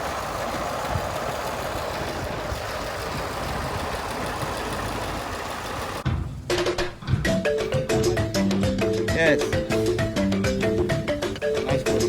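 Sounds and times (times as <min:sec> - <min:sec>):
vehicle engine running: 0:00.0 - 0:06.0
marimba-like music: 0:06.5 - 0:12.0.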